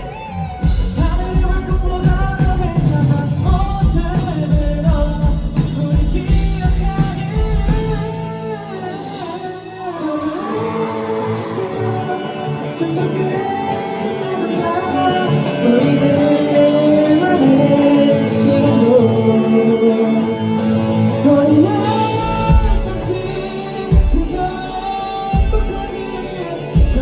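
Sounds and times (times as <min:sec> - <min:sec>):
heavy kick drum beat: 0:00.0 - 0:08.3, 0:22.2 - 0:24.6
live rock band with singing: 0:00.0 - 0:27.0.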